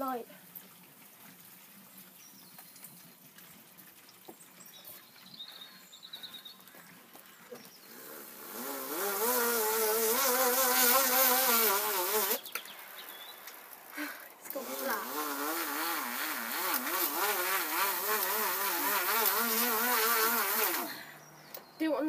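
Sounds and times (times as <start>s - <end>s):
faint hiss: 7.5s - 22.0s.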